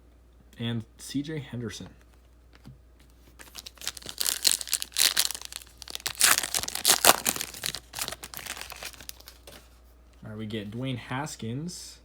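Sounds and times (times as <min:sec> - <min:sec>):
plastic wrapper crinkling and tearing: 0:03.4 - 0:09.6.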